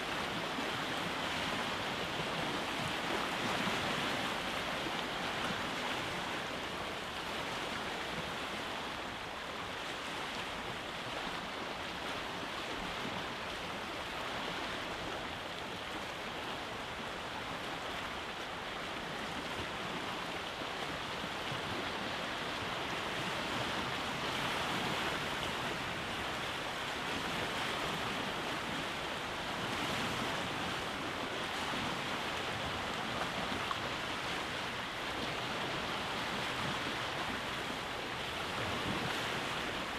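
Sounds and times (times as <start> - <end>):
waves washing onto rocky beach: 0.0 - 39.9.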